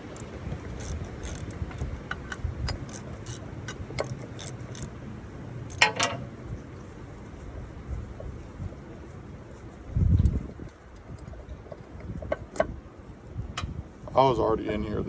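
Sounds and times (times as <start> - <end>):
metal tools clinking: 5.7 - 6.3.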